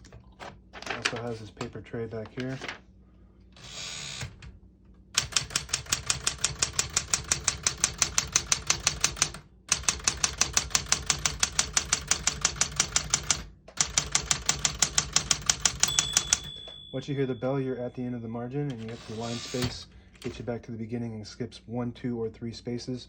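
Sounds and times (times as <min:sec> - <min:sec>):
manual typewriter typing: 0:00.0 - 0:02.8, 0:05.2 - 0:16.8, 0:18.7 - 0:20.4.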